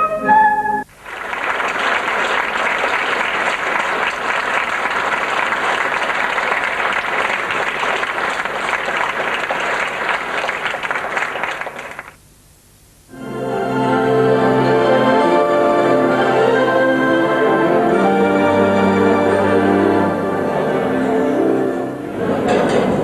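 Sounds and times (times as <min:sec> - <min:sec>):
audience applauding: 0:00.9 - 0:12.2.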